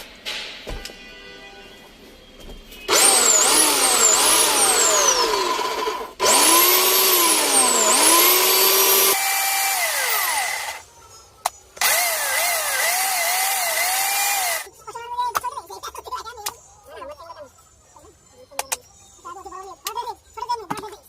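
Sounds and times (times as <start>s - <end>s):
electric motor whine: 2.9s - 10.8s, 11.8s - 14.7s.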